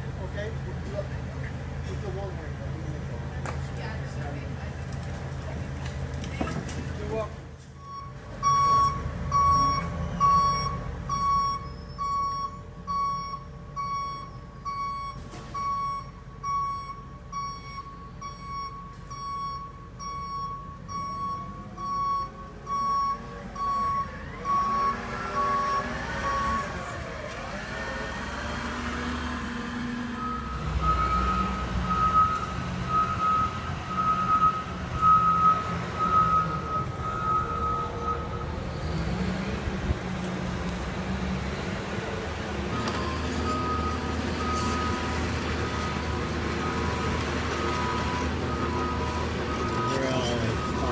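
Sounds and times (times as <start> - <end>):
diesel engine rumble: 0.0 - 50.9
higher-pitched reversing alarm: 7.8 - 26.8, 30.2 - 38.6
reversing alarm beeping: 7.8 - 26.8, 30.1 - 38.6, 42.7 - 50.9.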